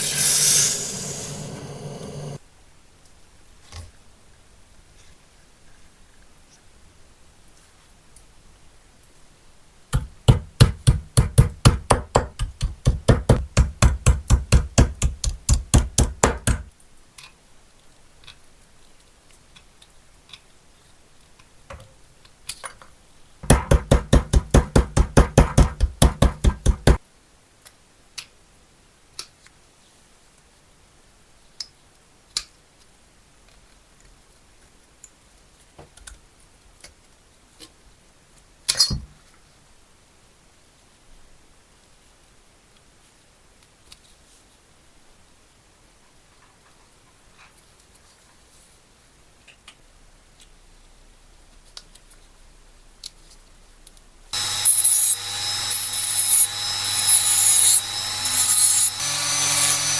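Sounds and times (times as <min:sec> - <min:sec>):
hammer tapping on metal: 0:10.0 - 0:16.7, 0:23.4 - 0:27.0.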